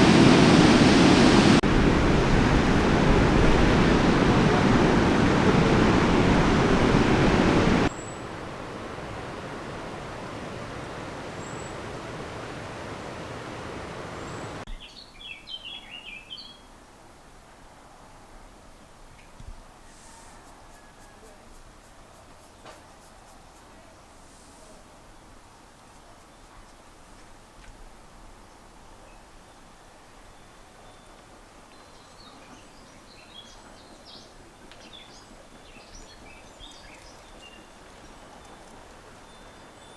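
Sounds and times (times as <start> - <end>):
outdoor background noise: 0.0 - 39.9
small birds chirping: 9.0 - 16.6, 31.8 - 39.9.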